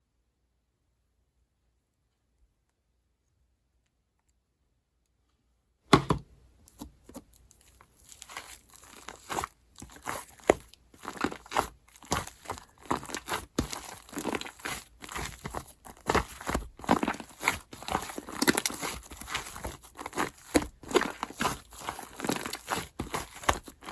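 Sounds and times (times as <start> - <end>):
slime crackling and popping: 7.4 - 23.9.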